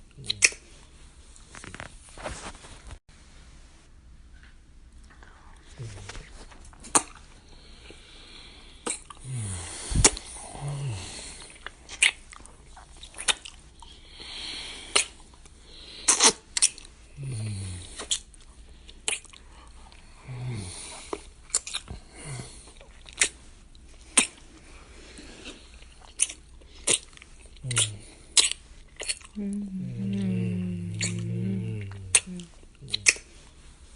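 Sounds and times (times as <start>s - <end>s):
wet lip smacks: 0.1s - 0.6s, 6.8s - 7.2s, 8.8s - 9.2s, 10.0s - 10.3s, 11.5s - 13.9s, 14.9s - 15.2s, 16.1s - 16.9s, 19.0s - 19.4s, 21.1s - 21.9s, 22.8s - 23.4s, 24.1s - 24.4s, 26.0s - 29.4s, 31.0s - 31.2s, 31.9s - 33.3s
breathy hiss: 7.4s - 11.6s
short low hums: 29.4s - 33.0s.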